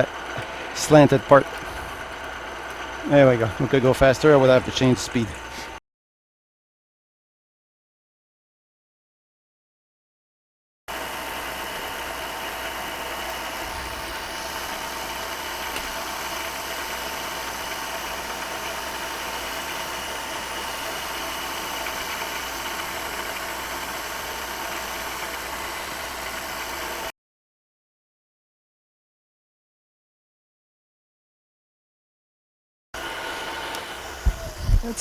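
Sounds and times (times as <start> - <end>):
milling machine whine: 0.0 - 5.8, 10.9 - 27.1, 33.0 - 35.0.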